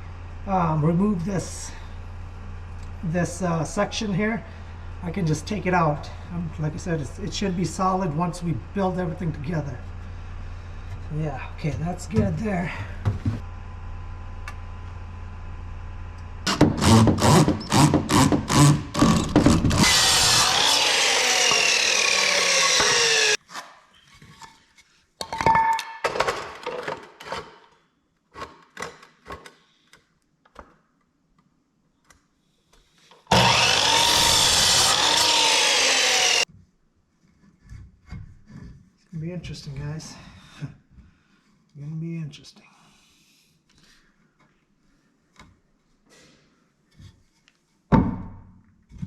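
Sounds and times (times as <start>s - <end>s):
saw cutting plywood: 16.5s - 23.4s, 33.1s - 36.5s.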